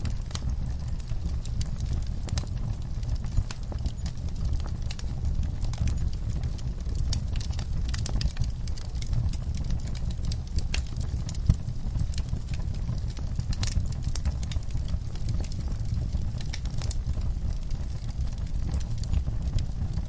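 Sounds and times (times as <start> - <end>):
wood fire crackling: 0.0 - 20.0
sharp pops and snaps: 7.1 - 20.0.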